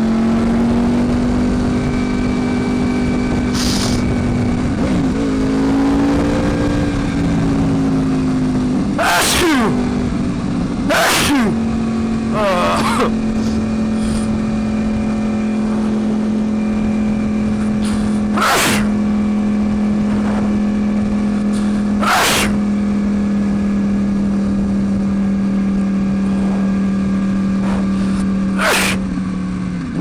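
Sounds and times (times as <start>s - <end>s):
motorcycle engine cruising: 0.0s - 30.0s
person sneezing in helmet: 3.6s - 4.0s, 9.0s - 9.8s, 10.9s - 11.6s, 12.4s - 14.3s, 17.8s - 19.0s, 21.6s - 22.6s, 27.7s - 29.0s.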